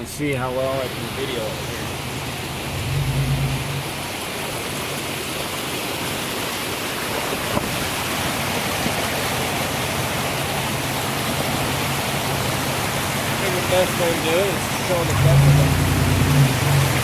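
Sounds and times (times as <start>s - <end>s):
river water rushing: 0.0s - 17.0s
low rumble: 2.0s - 4.2s.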